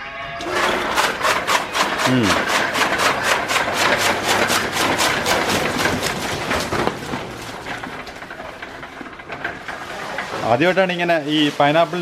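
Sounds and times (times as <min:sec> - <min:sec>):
chaff cutter chopping leaves: 0:00.4 - 0:08.5.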